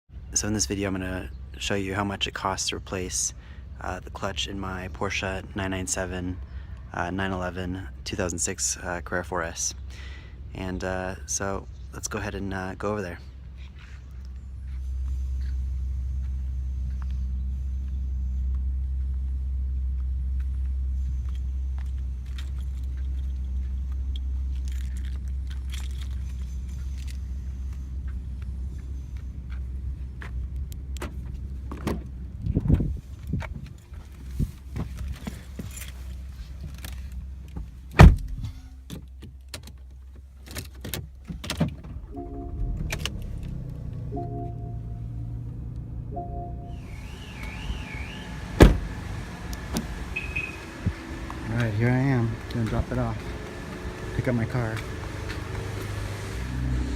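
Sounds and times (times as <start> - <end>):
car engine and road rumble: 0.1 - 56.9
door or latch thump: 38.0 - 38.4, 48.5 - 48.9
electronic warning chime: 42.1 - 43.1, 44.1 - 45.4, 46.1 - 47.8.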